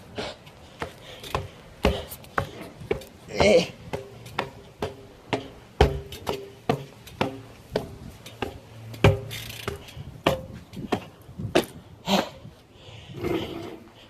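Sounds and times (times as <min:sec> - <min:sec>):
sharp knocks: 0:03.9 - 0:11.0.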